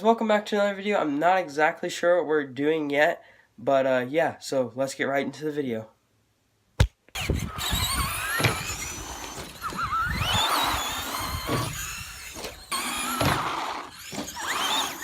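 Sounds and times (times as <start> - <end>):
electric motors whining: 7.2 - 15.0.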